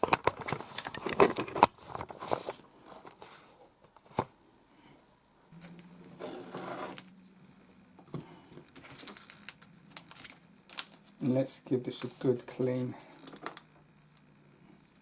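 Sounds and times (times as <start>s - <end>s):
faint low hum: 0.1s - 15.0s
wipes packet rustling: 8.6s - 13.7s.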